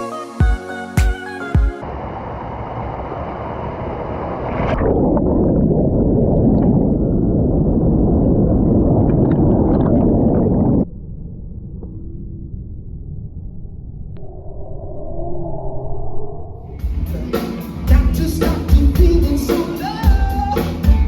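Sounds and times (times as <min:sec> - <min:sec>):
muffled rushing water: 0:01.9 - 0:10.9.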